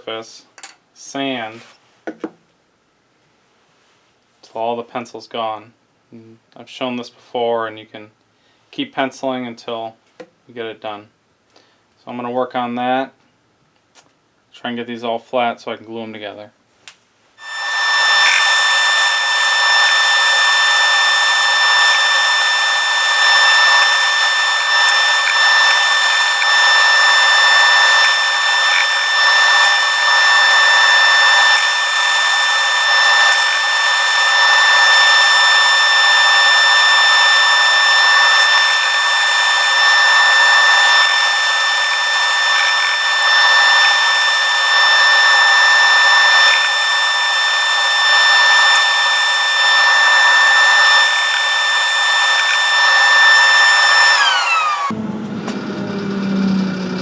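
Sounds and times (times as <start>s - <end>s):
sanding hiss: 17.4s - 54.3s
lathe whining: 17.4s - 57.0s.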